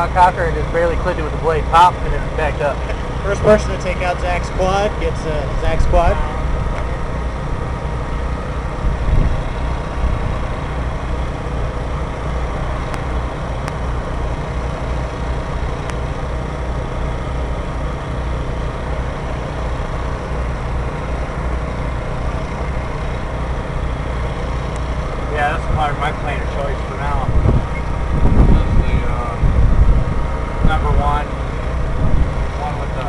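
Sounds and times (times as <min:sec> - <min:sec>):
wind buffeting microphone: 0:02.0 - 0:15.1, 0:22.1 - 0:33.0.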